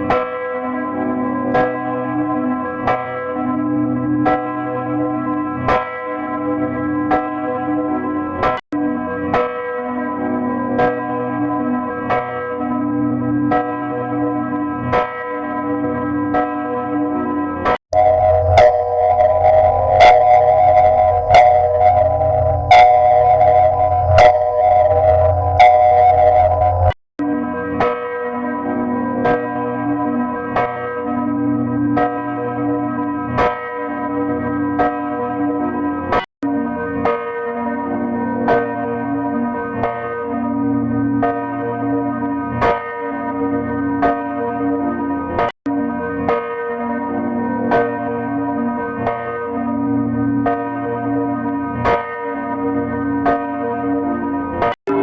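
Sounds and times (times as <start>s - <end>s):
church bell tolling: 0.0s - 55.0s
loud ringing: 18.0s - 27.0s.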